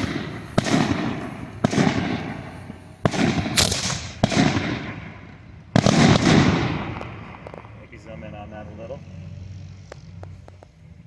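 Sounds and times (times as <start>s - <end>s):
fuse sharp cracks: 3.0s - 7.8s.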